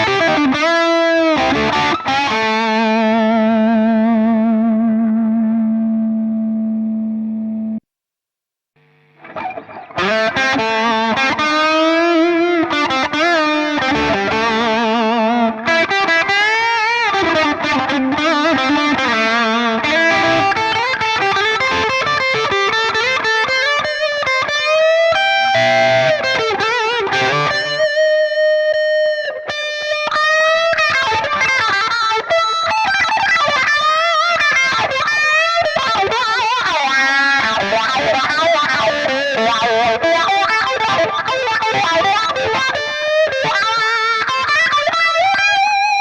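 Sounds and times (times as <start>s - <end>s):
overdriven electric guitar lead: 0.0s - 7.8s, 8.8s - 46.0s.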